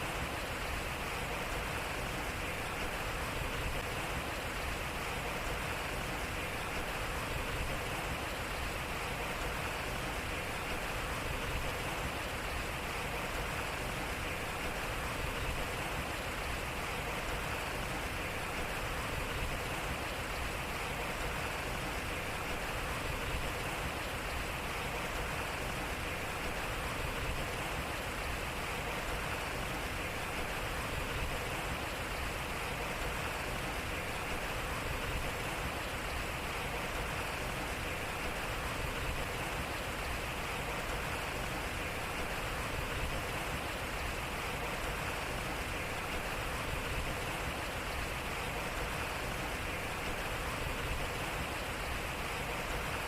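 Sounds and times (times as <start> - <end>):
water rushing at a waterwheel: 0.0 - 53.0.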